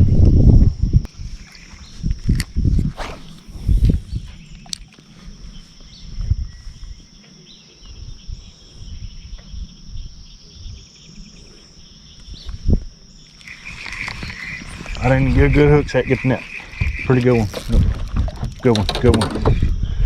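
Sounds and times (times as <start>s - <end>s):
wind on microphone: 0.0s - 7.0s, 13.7s - 20.0s
insects droning: 1.0s - 20.0s
sharp thump: 3.0s - 3.8s.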